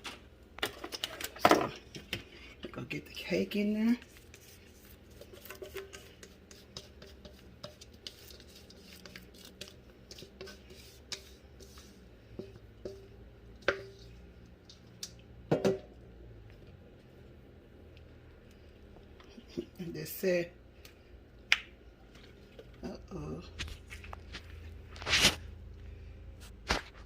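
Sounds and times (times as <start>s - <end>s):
utensil scraping mixing bowl: 0.6s - 14.9s.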